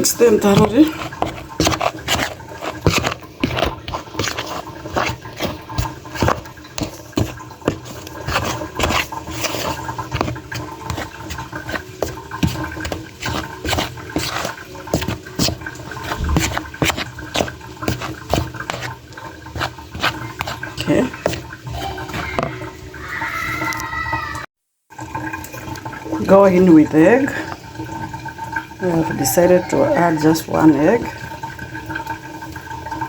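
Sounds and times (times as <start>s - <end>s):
spoon scraping a bowl: 0.0s - 22.6s.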